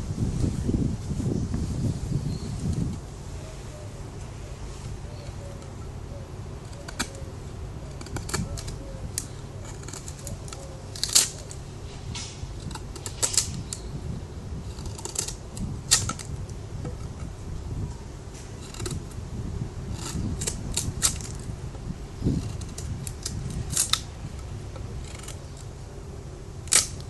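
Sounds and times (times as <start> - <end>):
folding knife clicks and snaps: 26.6 - 27.0.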